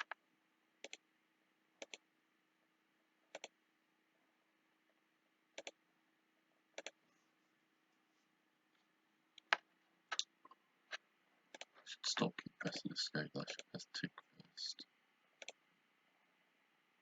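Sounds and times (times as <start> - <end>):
computer mouse clicking: 0.8 - 1.0, 1.8 - 2.0, 3.3 - 3.5, 5.6 - 5.8, 6.8 - 7.0, 9.4 - 10.3, 11.5 - 11.8, 15.4 - 15.6.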